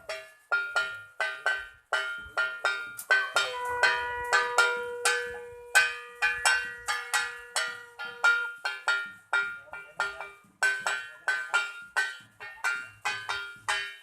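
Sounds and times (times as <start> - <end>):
bell struck repeatedly: 0.0 - 14.0
conch shell blown: 3.2 - 8.4.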